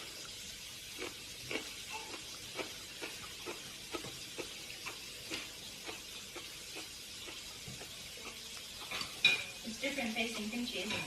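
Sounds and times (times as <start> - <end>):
soft chewing crunches: 0.8 - 9.2.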